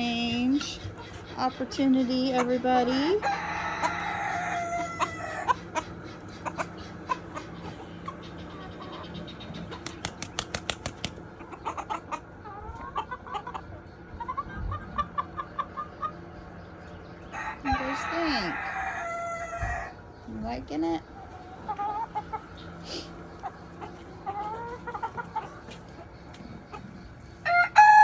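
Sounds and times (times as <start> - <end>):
chickens clucking: 0.0 - 28.0
rooster crowing: 3.2 - 5.5, 17.3 - 20.0, 27.4 - 28.0.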